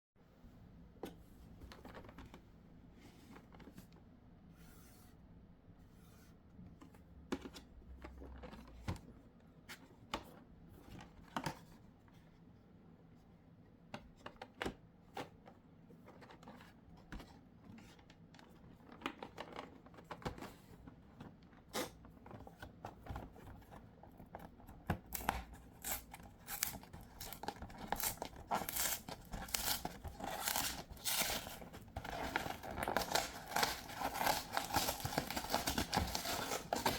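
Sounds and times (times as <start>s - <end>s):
packaging taps and rustles: 22.2s - 36.9s
packaging crinkling and tearing: 25.0s - 36.9s.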